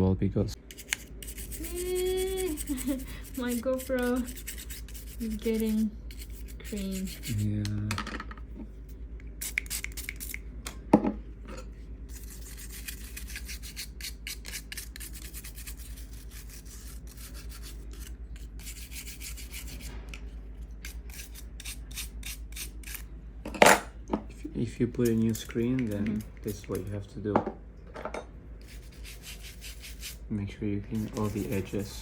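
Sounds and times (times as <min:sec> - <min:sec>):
rapid scrubbing strokes: 0:00.7 - 0:07.6, 0:28.6 - 0:30.2.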